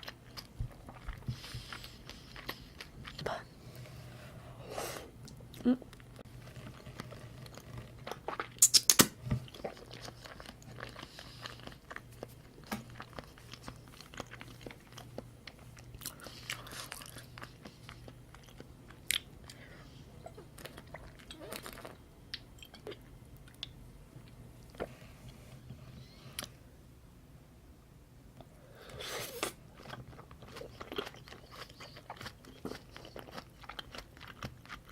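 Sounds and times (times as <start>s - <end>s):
close-miked chewing: 0.0s - 3.5s, 9.5s - 19.6s, 20.2s - 23.7s, 29.4s - 34.9s
wet mouth clicks and smacks: 8.6s - 9.1s.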